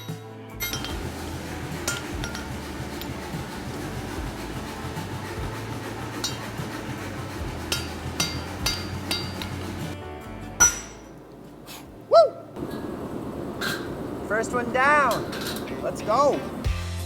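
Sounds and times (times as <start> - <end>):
steel tools clinking: 0.0 - 3.7, 6.1 - 6.8, 7.7 - 10.0, 10.6 - 11.7, 14.8 - 16.7
low hum: 0.6 - 16.9.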